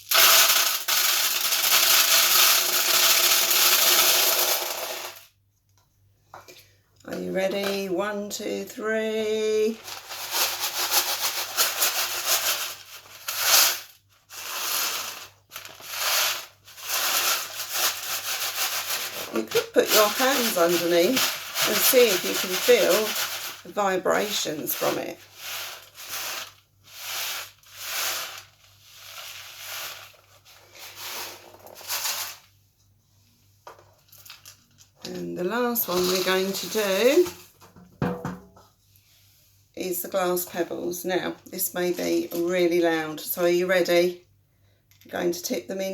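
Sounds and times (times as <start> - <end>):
seed rattling in foil tray: 0.0 - 5.3, 9.8 - 32.5, 35.6 - 37.4.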